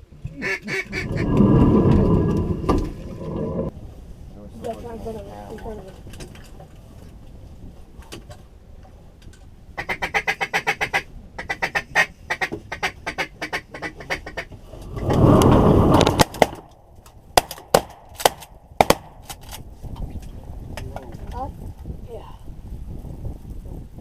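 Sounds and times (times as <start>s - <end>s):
duck call quacks: 0.4s - 1.0s, 9.8s - 14.5s
shotgun blasts: 17.4s - 19.4s.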